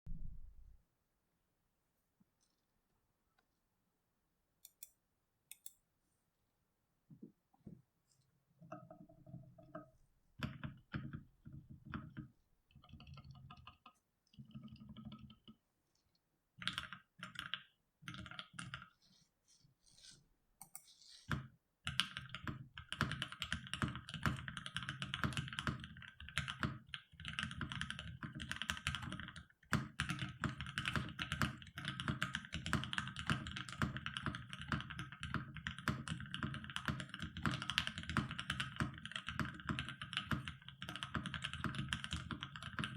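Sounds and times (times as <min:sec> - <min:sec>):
mechanical keyboard typing: 0:16.6 - 0:18.9, 0:21.9 - 0:42.9.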